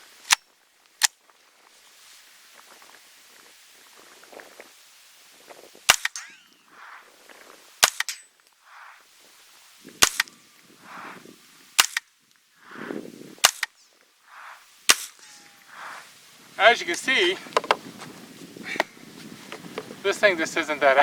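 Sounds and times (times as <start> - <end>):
soft dull thud: 17.4 - 18.2.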